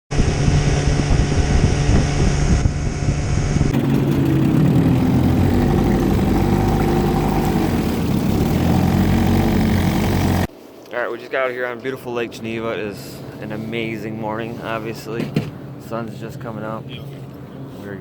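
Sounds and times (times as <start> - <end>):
boat motor running: 0.2 - 10.5.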